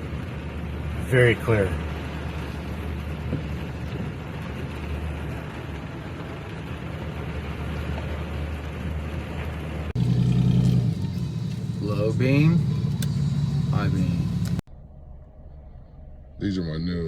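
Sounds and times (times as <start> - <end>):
car driving in rain: 0.0 - 14.6
low engine hum: 0.0 - 16.5.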